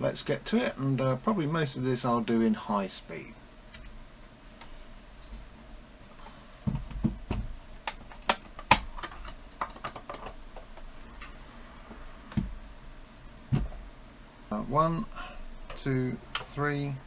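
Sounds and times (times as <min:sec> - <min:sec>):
dull knocks: 0:13.5 - 0:13.8.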